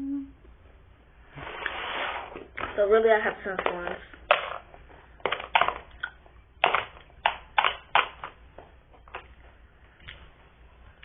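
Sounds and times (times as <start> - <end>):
plastic containers clicking and knocking: 3.4 - 8.4.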